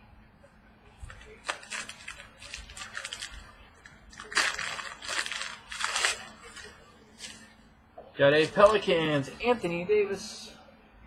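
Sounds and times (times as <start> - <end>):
plastic packaging crinkling: 1.1 - 7.5.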